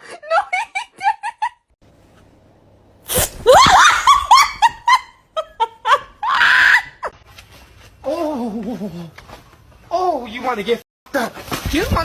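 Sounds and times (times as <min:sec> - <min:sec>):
person shrieking with laughter: 0:03.4 - 0:04.7, 0:06.2 - 0:07.1.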